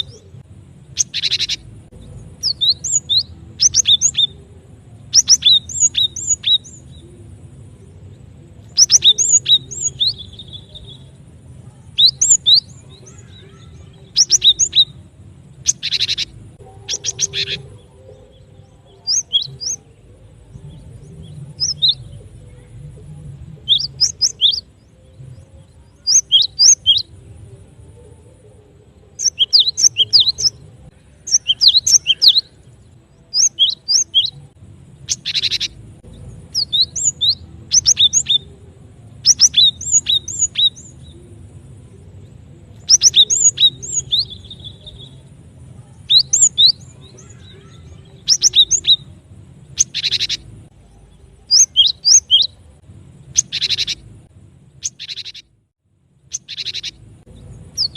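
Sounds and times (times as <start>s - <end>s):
harsh buzzing bird calls: 0.0s - 7.0s, 8.6s - 11.2s, 11.8s - 22.6s, 33.3s - 38.6s, 39.2s - 41.0s, 42.8s - 45.2s, 46.0s - 49.1s, 49.7s - 50.6s, 51.5s - 52.6s, 53.2s - 54.1s, 54.7s - 55.6s, 56.3s - 57.9s
bird chirping high and sharp: 0.9s - 1.7s, 2.3s - 4.4s, 5.1s - 7.0s, 8.6s - 11.1s, 12.0s - 15.0s, 15.6s - 17.7s, 19.0s - 19.8s, 21.3s - 22.1s, 23.6s - 24.7s, 26.0s - 27.1s, 29.2s - 30.6s, 31.3s - 32.6s, 33.3s - 34.4s, 35.0s - 35.8s, 36.4s - 38.5s, 39.2s - 41.0s, 42.8s - 45.1s, 46.0s - 49.1s, 49.8s - 50.5s, 51.5s - 52.6s, 53.3s - 54.1s, 54.8s - 55.6s, 56.3s - 57.0s, 57.6s - 57.9s.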